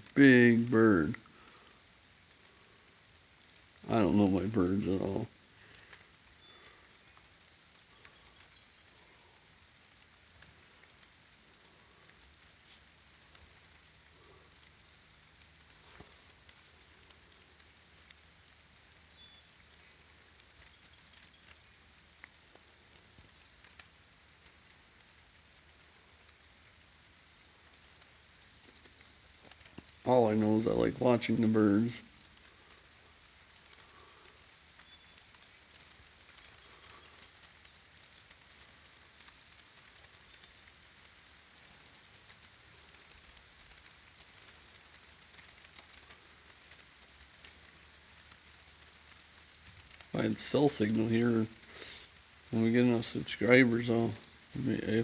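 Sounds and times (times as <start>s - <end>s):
light rain falling: 0.0s - 55.0s
raindrops ticking: 0.0s - 55.0s
bird chirping: 6.3s - 9.4s, 19.1s - 21.7s, 34.8s - 38.3s.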